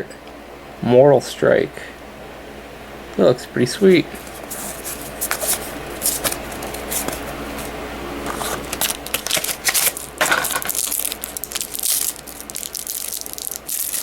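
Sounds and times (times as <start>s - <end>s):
trading cards flipping: 3.8s - 14.0s.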